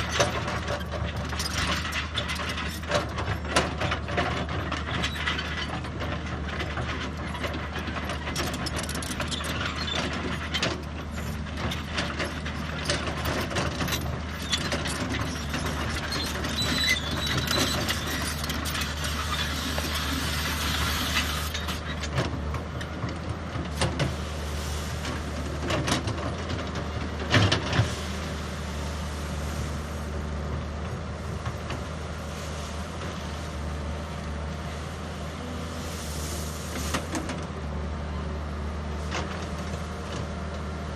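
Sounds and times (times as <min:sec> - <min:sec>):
construction machine engine hum: 0:00.0 - 0:40.9
metallic clanks and knocks: 0:25.0 - 0:28.0.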